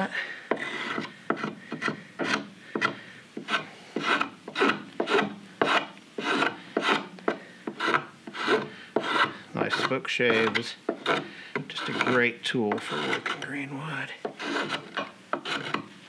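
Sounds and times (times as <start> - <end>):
spokeshave scraping wood: 0.0 - 16.0.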